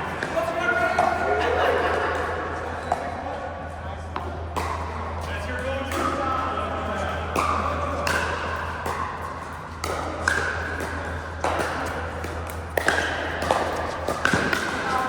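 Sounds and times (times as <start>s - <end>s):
steady low hum: 0.0s - 15.0s
paddles striking plastic ball: 9.8s - 15.0s.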